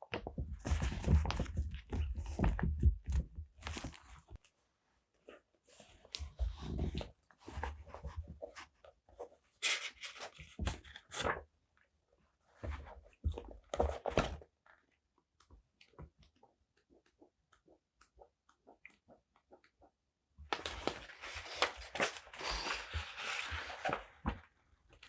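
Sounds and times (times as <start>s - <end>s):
paper rustling: 20.5s - 24.5s.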